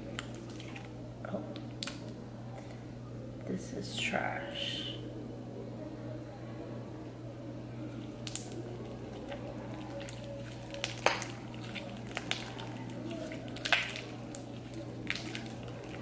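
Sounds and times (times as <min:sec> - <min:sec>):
slime squishing: 0:00.0 - 0:02.2, 0:07.8 - 0:16.0
steady low hum: 0:00.0 - 0:16.0
wet clicks and pops: 0:01.6 - 0:02.1, 0:08.2 - 0:08.6, 0:10.0 - 0:15.7.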